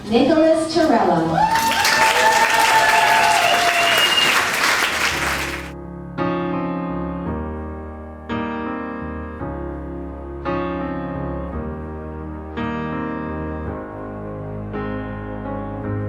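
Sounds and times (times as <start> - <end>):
people applauding and cheering: 0.0 - 5.8
solo piano chords: 5.7 - 16.0.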